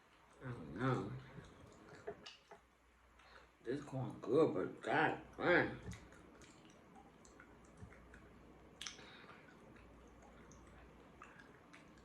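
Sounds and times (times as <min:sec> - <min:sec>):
low room hum: 0:00.0 - 0:12.0
wet chewing sounds: 0:01.2 - 0:03.6, 0:05.8 - 0:12.0.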